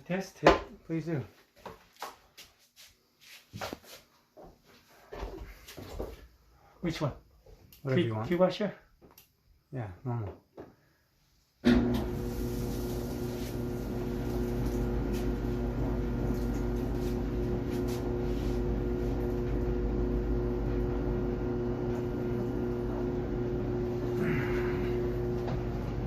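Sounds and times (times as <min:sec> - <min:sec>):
clothes dryer humming: 0:11.6 - 0:26.0.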